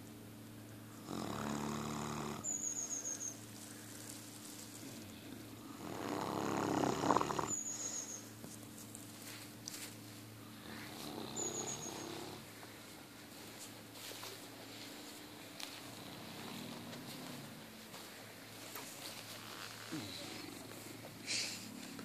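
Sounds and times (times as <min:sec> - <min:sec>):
puppy snoring: 0:00.9 - 0:02.8, 0:04.7 - 0:08.2, 0:10.5 - 0:12.6, 0:15.8 - 0:17.7, 0:19.4 - 0:22.0.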